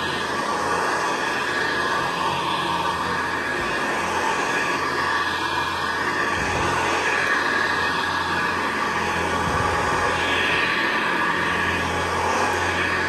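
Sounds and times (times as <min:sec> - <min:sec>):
vacuum cleaner running on carpet: 0:00.0 - 0:13.0.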